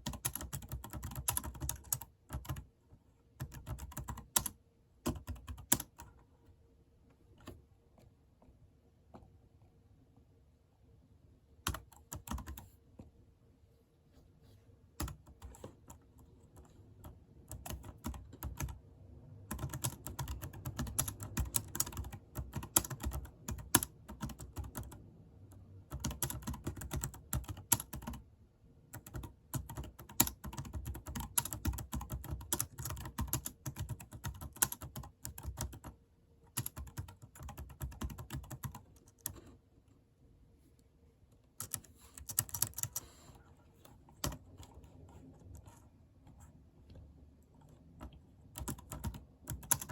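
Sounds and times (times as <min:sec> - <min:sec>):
rapid keyboard typing: 0:00.0 - 0:02.7, 0:03.4 - 0:06.2, 0:11.6 - 0:12.7, 0:15.0 - 0:18.8, 0:19.4 - 0:28.2, 0:28.9 - 0:39.5, 0:41.6 - 0:43.1, 0:44.1 - 0:45.8, 0:47.6 - 0:49.9.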